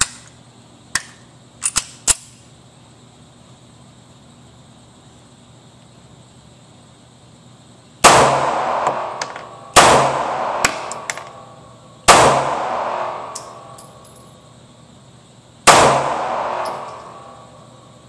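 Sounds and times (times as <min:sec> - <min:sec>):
pistol shots echoing: 0:08.0 - 0:11.5, 0:12.1 - 0:14.0, 0:15.7 - 0:17.5.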